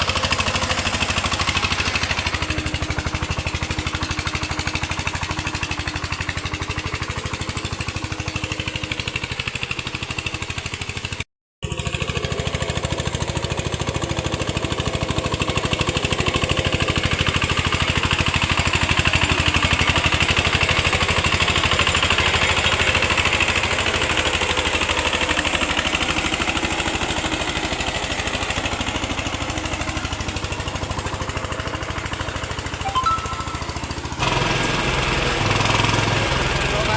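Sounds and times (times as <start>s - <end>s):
diesel engine chugging: 0.0s - 24.4s, 34.2s - 36.9s.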